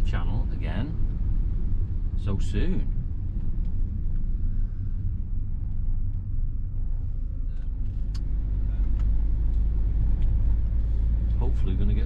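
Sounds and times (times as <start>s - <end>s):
steady low rumble: 0.0s - 12.0s.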